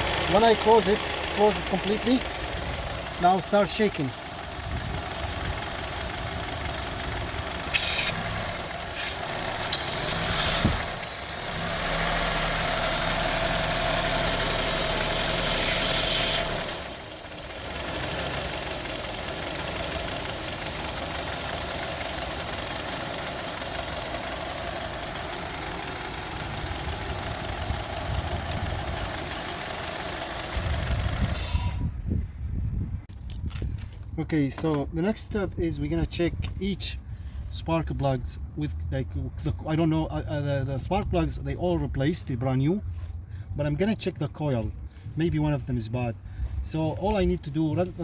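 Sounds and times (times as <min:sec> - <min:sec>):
car engine idling roughly: 0:00.0 - 0:31.8
hiss: 0:07.7 - 0:08.2, 0:09.0 - 0:16.6.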